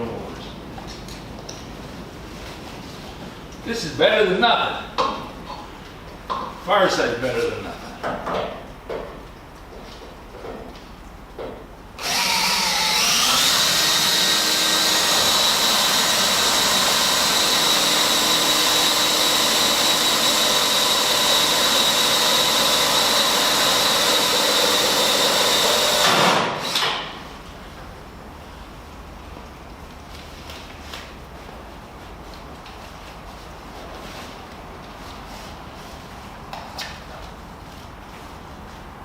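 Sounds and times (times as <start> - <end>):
electric drill motor whining: 12.0 - 27.0.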